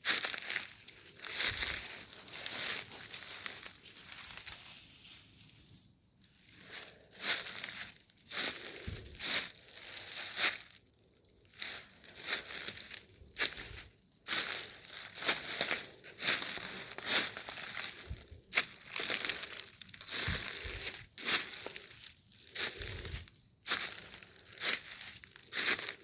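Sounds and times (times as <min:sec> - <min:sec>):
footsteps crunching dry leaves: 0:00.0 - 0:26.0.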